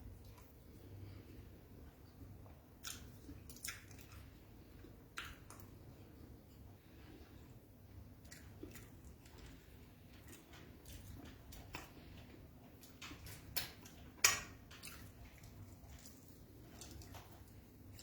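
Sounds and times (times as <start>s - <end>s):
mouth chewing food: 0.0s - 18.0s.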